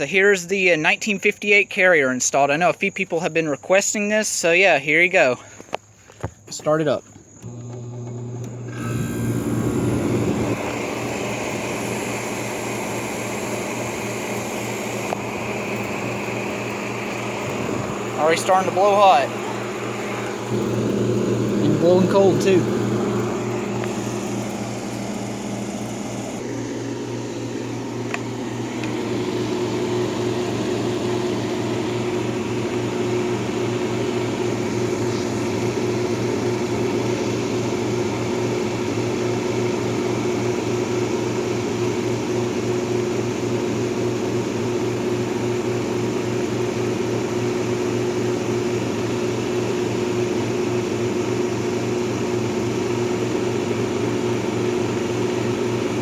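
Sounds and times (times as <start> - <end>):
steady higher hum: 7.4 - 37.6.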